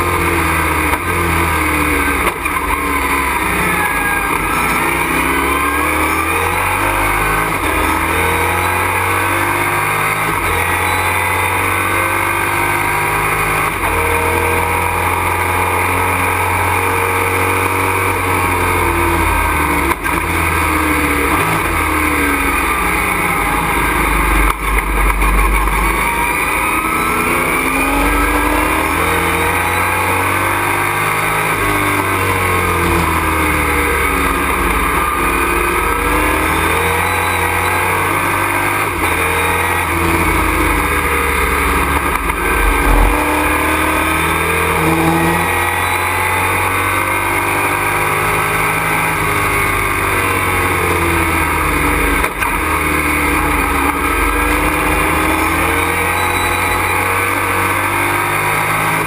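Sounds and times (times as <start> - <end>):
race truck engine revving: 0.0 - 59.0
low rumble: 22.6 - 28.4, 40.2 - 44.6.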